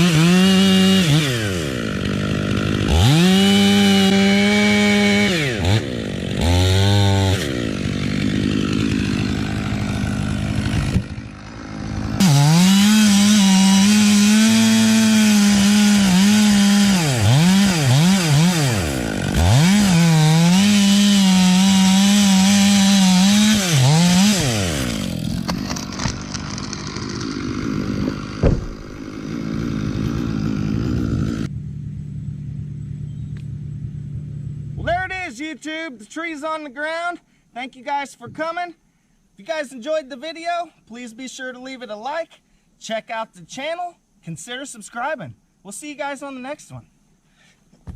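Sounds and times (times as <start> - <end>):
chainsaw cutting wood: 0.0 - 31.6
sharp knock: 28.4 - 28.9.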